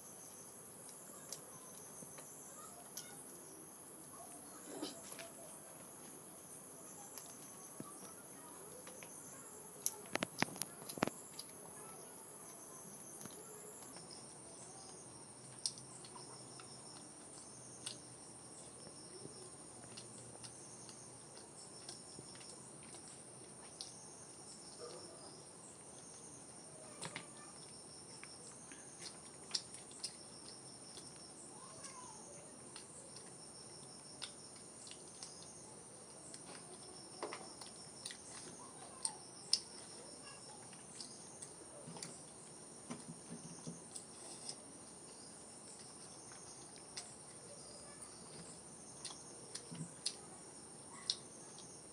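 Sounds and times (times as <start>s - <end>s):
crickets trilling: 0.0s - 51.9s
person chewing food: 15.4s - 25.0s, 27.6s - 31.3s, 32.7s - 38.4s, 43.6s - 47.5s, 48.8s - 50.3s.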